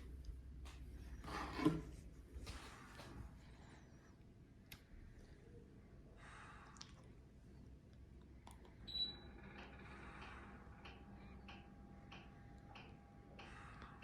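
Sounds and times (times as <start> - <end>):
faint steady hum: 0.0 - 14.0
air conditioner beep: 8.8 - 9.8.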